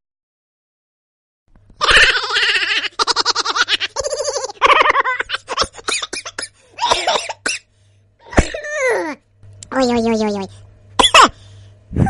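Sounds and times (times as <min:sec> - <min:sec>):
comic high-pitched laughing voice: 0:01.8 - 0:05.9.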